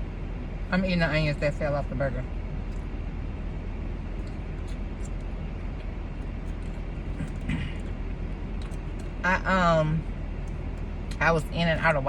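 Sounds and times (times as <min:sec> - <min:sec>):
car idling: 0:00.0 - 0:12.0.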